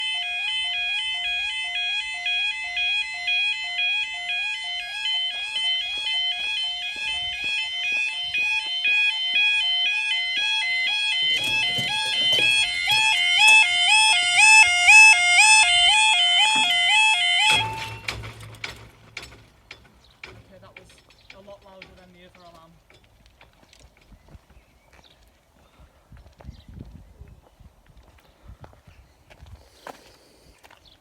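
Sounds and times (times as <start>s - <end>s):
level crossing alarm two-tone warble: 0.0s - 19.1s
second crossing alarm: 0.0s - 20.9s.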